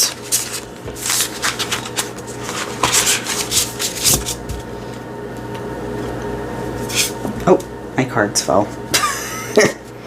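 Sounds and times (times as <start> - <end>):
cards being shuffled: 0.0 - 4.6.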